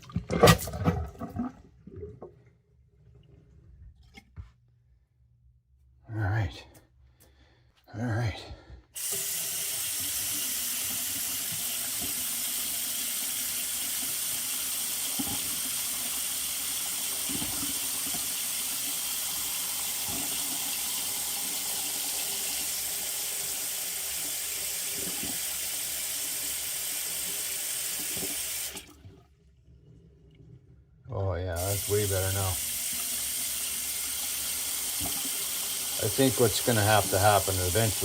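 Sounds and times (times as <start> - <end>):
tap water running into sink: 9.0 - 29.2, 31.6 - 38.0.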